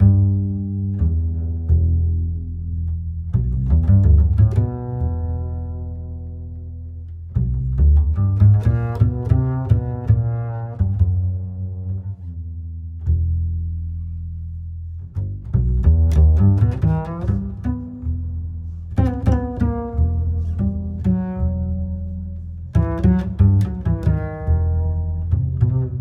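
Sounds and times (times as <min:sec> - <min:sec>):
low bass: 0:00.0 - 0:26.0
plucked and bowed strings music: 0:00.0 - 0:26.0.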